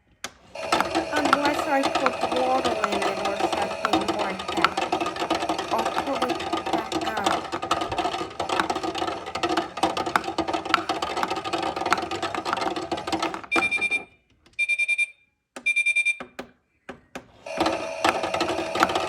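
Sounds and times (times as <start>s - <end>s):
toy washing machine motor whirring: 0.3s - 14.0s, 17.2s - 19.0s
short electronic beeps: 13.5s - 16.2s.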